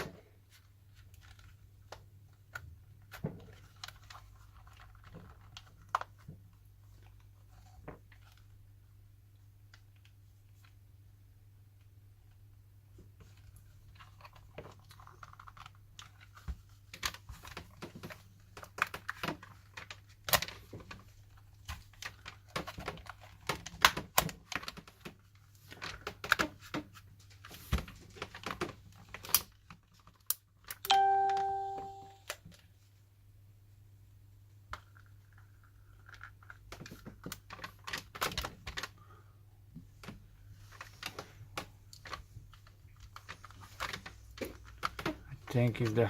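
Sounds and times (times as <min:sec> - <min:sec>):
loud ringing tone: 0:30.9 - 0:32.2.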